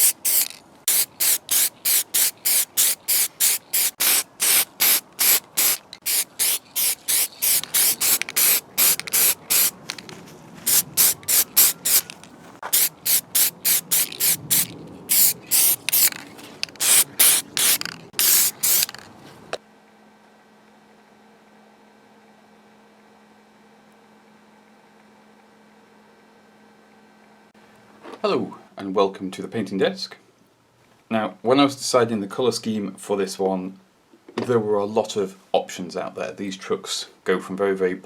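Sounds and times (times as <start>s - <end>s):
aerosol spray bursts: 0.0s - 10.0s, 10.7s - 19.0s.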